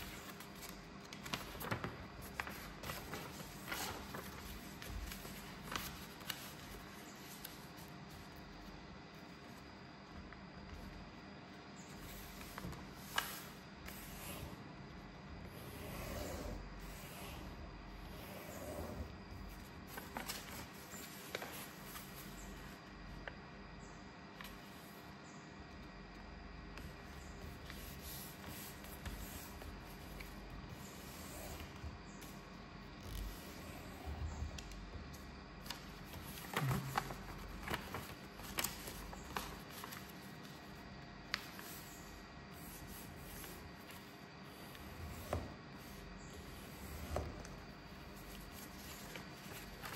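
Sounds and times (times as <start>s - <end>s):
paper crinkling and crackling: 0.0s - 8.3s, 19.4s - 22.8s, 34.5s - 41.8s
paper rustling and folding: 0.0s - 11.1s, 11.9s - 15.0s, 15.6s - 23.4s, 26.7s - 49.9s.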